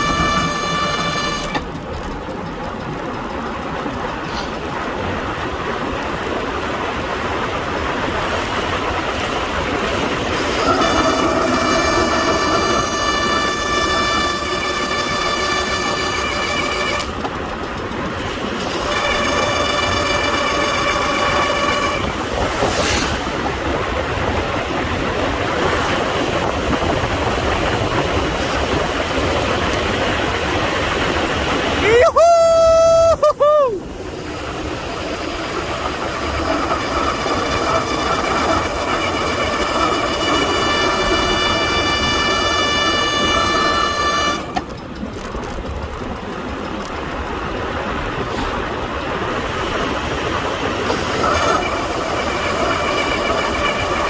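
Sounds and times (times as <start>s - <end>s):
wind and tyre rush: 0.0s - 54.0s
wind noise on microphone: 4.9s - 31.8s.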